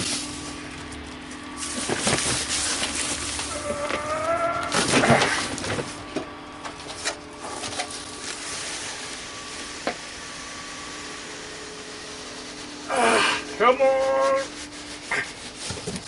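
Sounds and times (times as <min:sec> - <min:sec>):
packing knocks and rustles: 0:01.2 - 0:04.0
cardboard tearing: 0:01.6 - 0:05.9.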